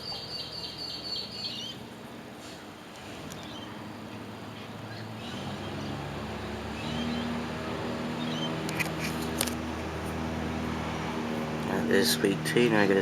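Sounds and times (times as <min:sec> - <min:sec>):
ceiling fan motor hum: 0:00.0 - 0:13.0.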